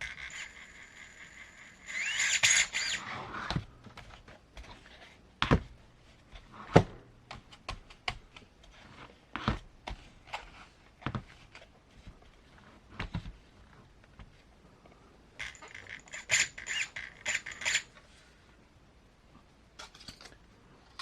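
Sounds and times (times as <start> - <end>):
electric motor whining: 0.1 - 3.2.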